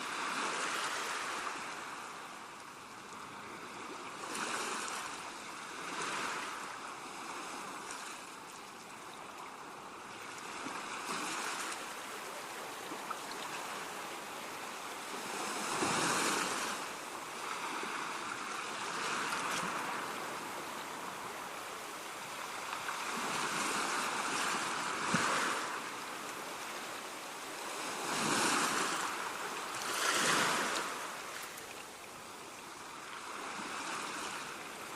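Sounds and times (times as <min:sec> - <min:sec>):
rushing water: 0:07.8 - 0:34.9.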